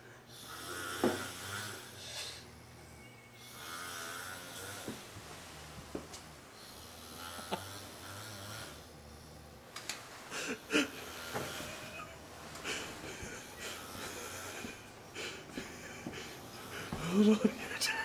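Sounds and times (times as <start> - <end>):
man snoring: 0.3 - 5.8, 6.6 - 9.7, 10.3 - 17.9.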